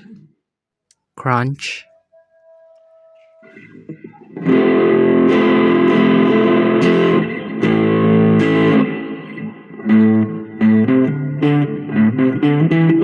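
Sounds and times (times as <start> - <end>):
electric guitar chords strummed: 3.4 - 13.0.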